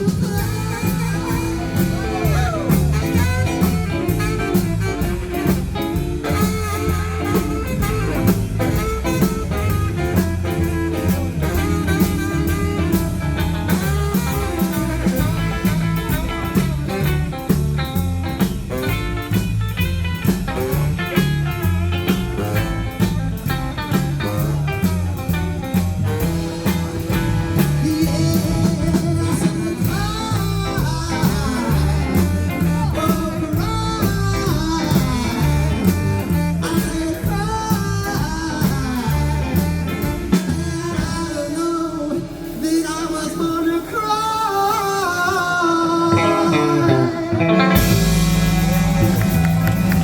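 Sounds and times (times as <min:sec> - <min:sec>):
live rock band playing: 0:00.0 - 0:50.0
lead guitar bending notes: 0:00.1 - 0:17.5, 0:46.1 - 0:50.0.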